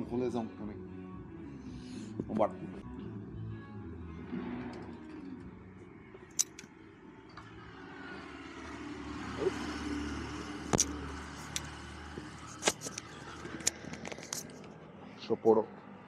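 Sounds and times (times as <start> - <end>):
road vehicle rumbling by: 7.2 - 16.0.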